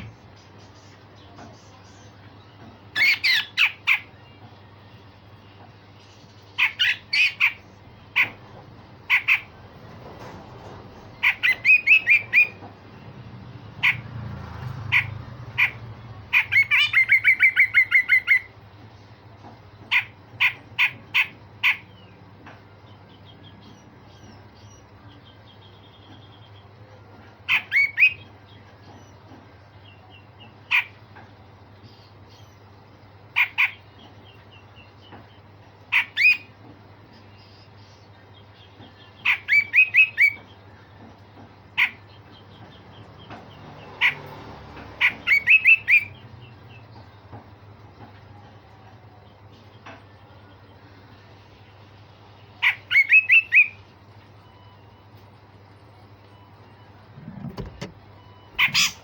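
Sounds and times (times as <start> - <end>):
bird harsh scolding calls: 6.6 - 9.6, 11.2 - 12.6, 13.8 - 14.1, 14.8 - 18.5, 45.0 - 46.2, 58.5 - 59.0.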